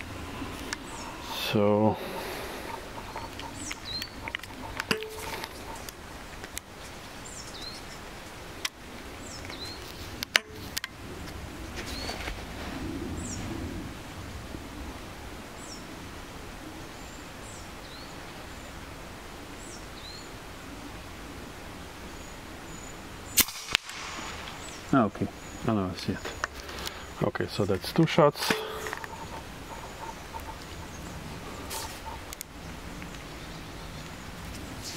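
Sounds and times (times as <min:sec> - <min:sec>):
sharp crack: 0:23.3 - 0:25.3.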